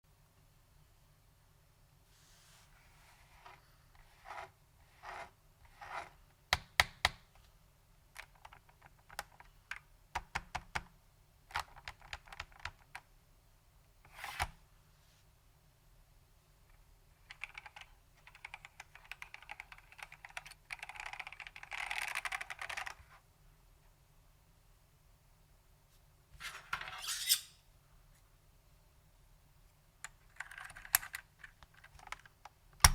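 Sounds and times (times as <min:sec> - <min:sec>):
mechanical keyboard typing: 0:11.5 - 0:13.0, 0:17.3 - 0:23.0.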